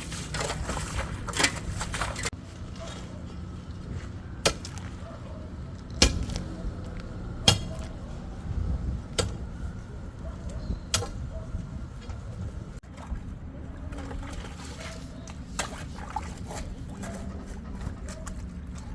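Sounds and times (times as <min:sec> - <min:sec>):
steady low rumble: 0:00.6 - 0:14.0
digging tool striking ground: 0:04.4 - 0:05.0, 0:05.9 - 0:06.5, 0:07.4 - 0:08.0, 0:09.1 - 0:09.5.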